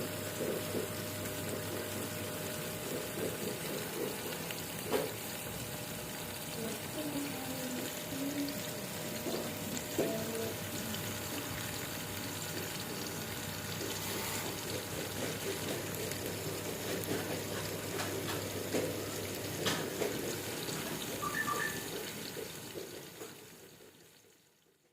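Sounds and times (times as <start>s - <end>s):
water rushing and splashing: 4.0s - 22.1s.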